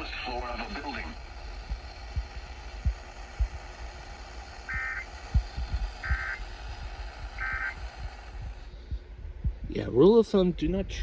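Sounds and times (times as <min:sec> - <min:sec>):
two-tone digital warbling bursts: 0:04.6 - 0:06.5, 0:07.3 - 0:07.9
low thumps: 0:08.0 - 0:09.8.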